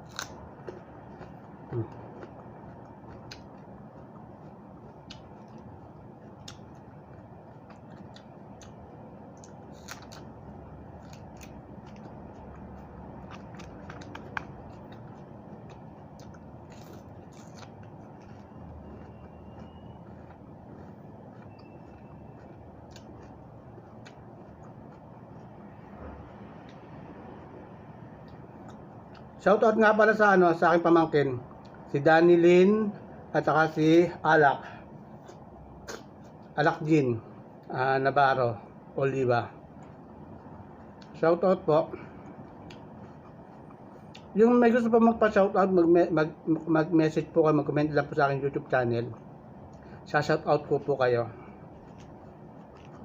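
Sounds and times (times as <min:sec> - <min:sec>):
chewing crunchy vegetables: 0:00.0 - 0:38.1, 0:39.0 - 0:53.0
low background hum: 0:00.0 - 0:53.0
mouth clicks: 0:35.3 - 0:36.4.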